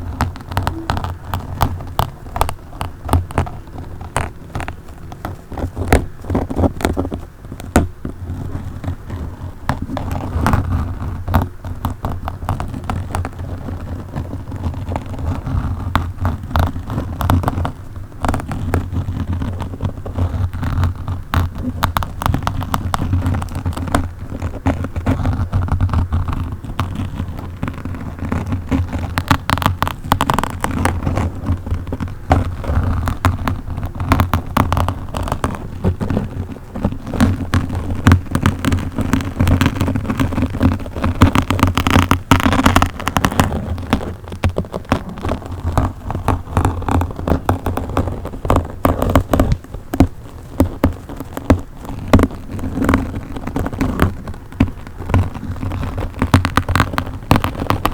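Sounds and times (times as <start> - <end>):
low handling rumble: 0.0 - 22.2
microphone being scratched: 0.0 - 57.9.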